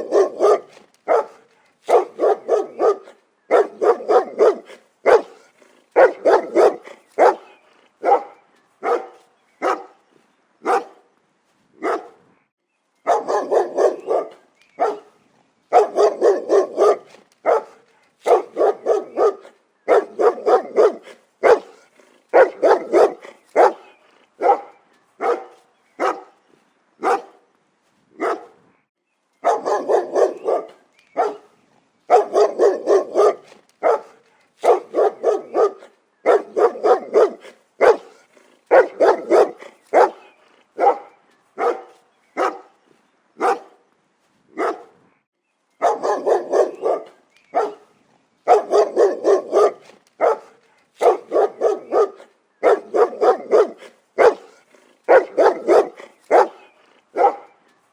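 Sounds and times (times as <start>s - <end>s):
dog barking: 0.0s - 10.0s, 10.6s - 11.1s, 11.8s - 12.2s, 13.0s - 26.4s, 27.0s - 27.4s, 28.2s - 28.6s, 29.4s - 42.8s, 43.4s - 43.8s, 44.6s - 45.0s, 45.8s - 57.6s.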